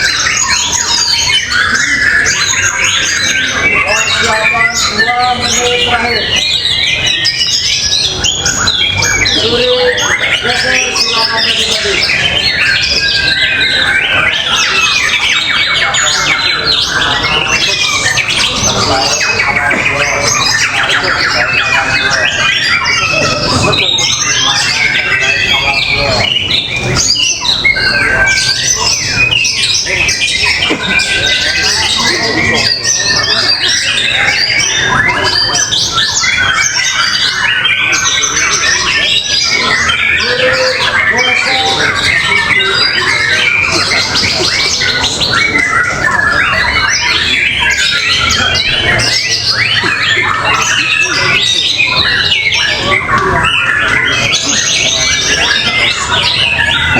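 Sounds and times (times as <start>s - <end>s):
low background murmur: 0.0s - 56.9s
songbirds singing: 0.0s - 56.9s.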